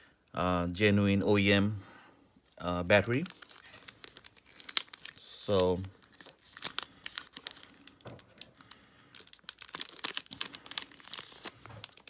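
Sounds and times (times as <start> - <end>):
plastic crinkling and crackling: 2.4 - 12.0.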